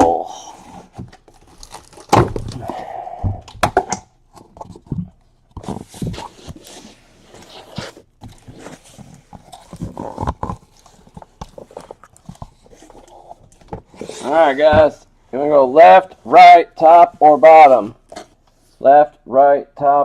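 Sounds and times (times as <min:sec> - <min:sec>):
plastic wrapping crinkling: 0:01.1 - 0:02.6.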